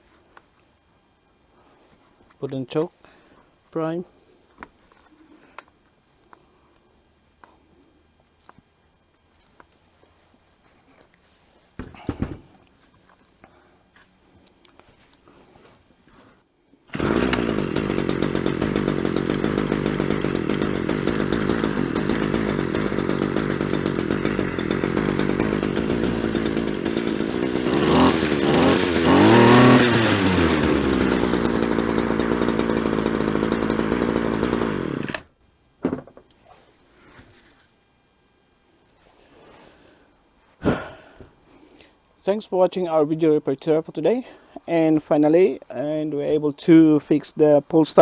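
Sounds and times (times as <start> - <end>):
string trimmer engine running: 16.9 - 35.3.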